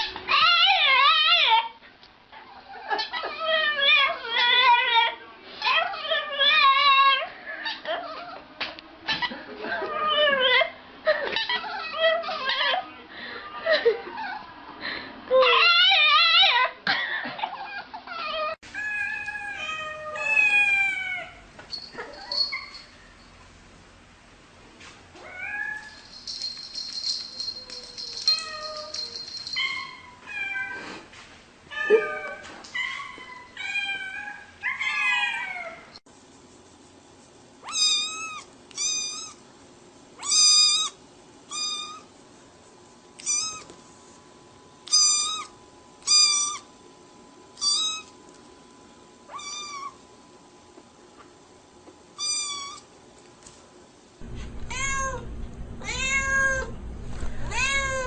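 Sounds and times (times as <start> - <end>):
cats meowing: 18.1 - 21.4, 37.6 - 39.4, 43.2 - 43.7, 49.3 - 50.0, 54.5 - 56.7, 57.5 - 58.0.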